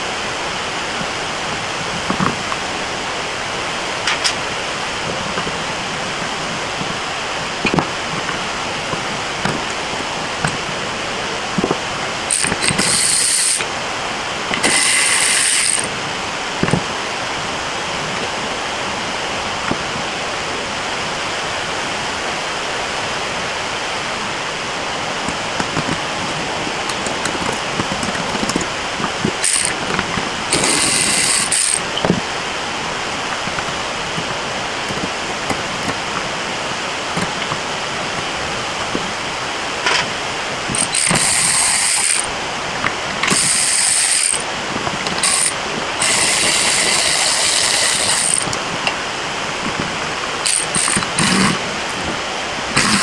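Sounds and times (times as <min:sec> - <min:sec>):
ratchet wrench bursts: 0:12.1 - 0:13.8, 0:14.4 - 0:16.0, 0:25.2 - 0:38.9, 0:40.7 - 0:49.0, 0:49.6 - 0:53.0.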